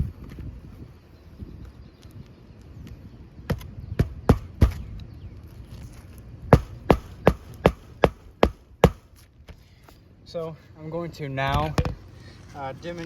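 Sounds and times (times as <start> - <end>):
hammer driving nails into shingle: 3.5 - 4.9, 6.5 - 9.1.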